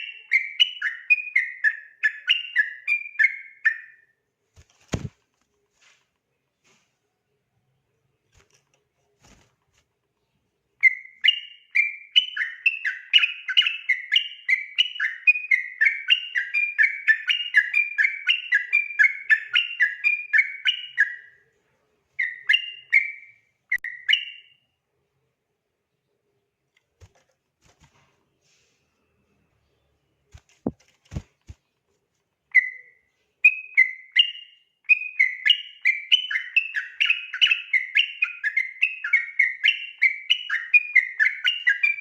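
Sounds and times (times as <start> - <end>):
bird singing whistled notes: 0.0 - 4.2, 10.8 - 21.4, 22.2 - 24.6, 32.5 - 42.0.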